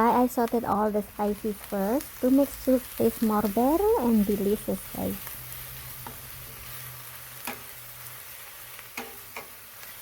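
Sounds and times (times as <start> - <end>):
vegetables sizzling in hot oil: 0.0 - 10.0
utensil clicking against pan: 7.4 - 7.7, 8.9 - 9.6.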